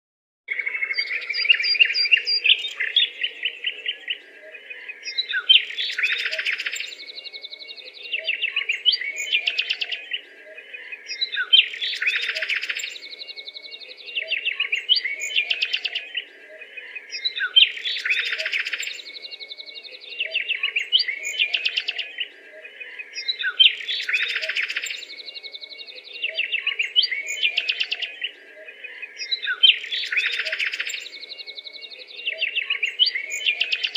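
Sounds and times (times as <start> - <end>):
songbirds chirping: 0.5 - 33.9.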